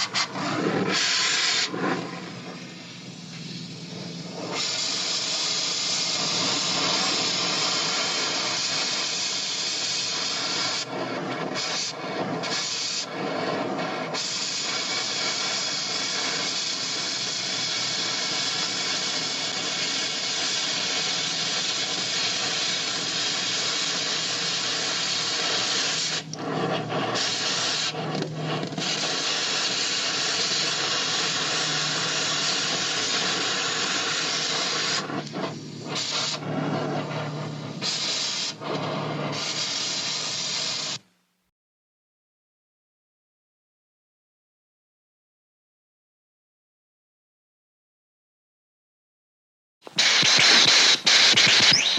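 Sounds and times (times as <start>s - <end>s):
loud steady hiss: 0.0s - 41.5s, 49.8s - 51.9s.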